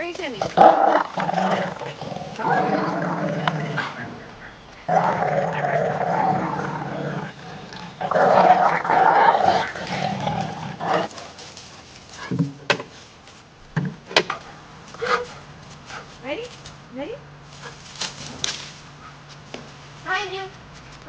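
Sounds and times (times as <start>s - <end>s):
dog growling: 0.4s - 11.4s.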